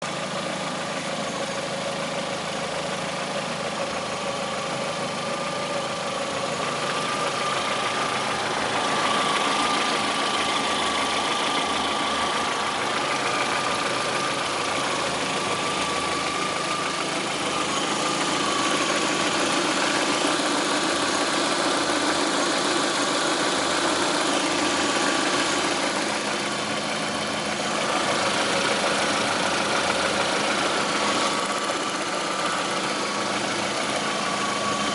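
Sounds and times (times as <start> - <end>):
car engine idling with knock: 0.0 - 34.9.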